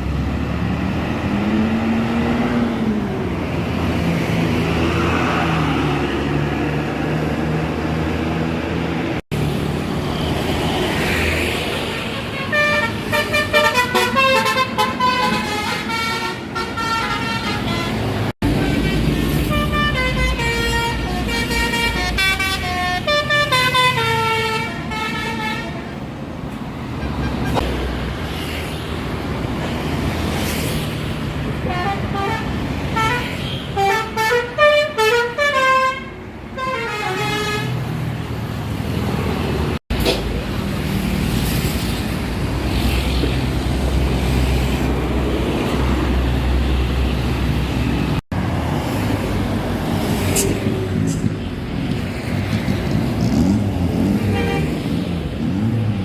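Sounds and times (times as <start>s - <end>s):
bus engines rumbling: 0.0s - 56.0s
bus melody horns: 12.0s - 26.0s, 31.6s - 37.9s, 54.1s - 54.8s.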